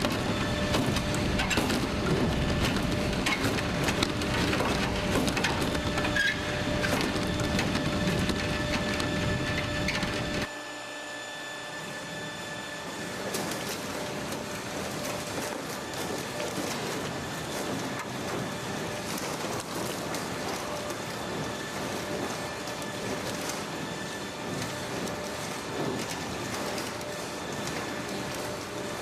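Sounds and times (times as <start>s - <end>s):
ceiling tiles rattling and clattering: 0.0s - 10.5s.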